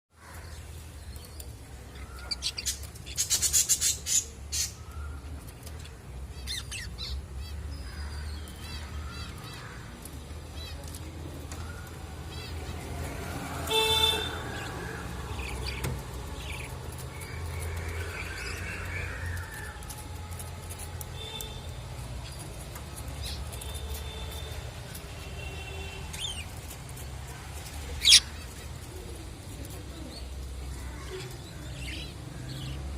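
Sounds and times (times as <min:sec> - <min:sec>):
budgerigars chirping: 0:28.0 - 0:28.3.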